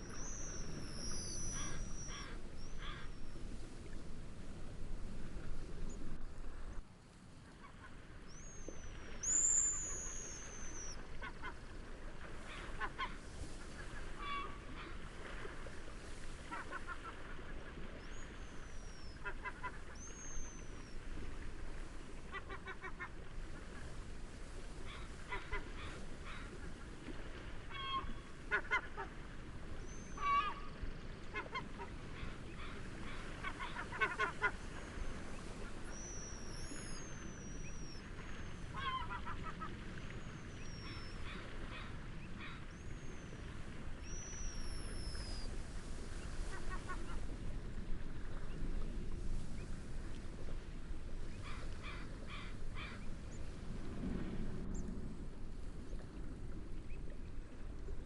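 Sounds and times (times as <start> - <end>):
high whistled bird calls: 0.0 - 2.8, 8.3 - 11.0, 35.9 - 38.0, 44.0 - 45.5
waterbirds honking and cackling: 0.0 - 3.6, 7.6 - 21.1, 22.1 - 23.9, 24.7 - 45.5, 46.2 - 47.5, 51.0 - 53.5
gentle waves: 0.0 - 58.0
wind: 0.0 - 58.0.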